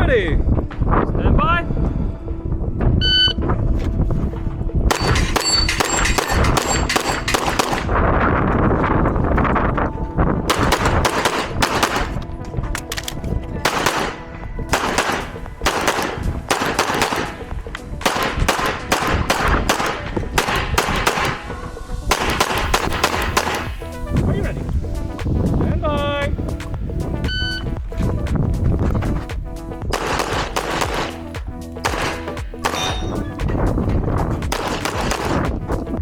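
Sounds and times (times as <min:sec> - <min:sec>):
music: 0:00.0 - 0:36.0
rapid pistol shots: 0:04.9 - 0:07.9, 0:10.5 - 0:12.2, 0:13.6 - 0:17.4, 0:18.0 - 0:21.5, 0:22.1 - 0:23.8, 0:29.9 - 0:31.2, 0:31.8 - 0:33.1, 0:34.5 - 0:35.6.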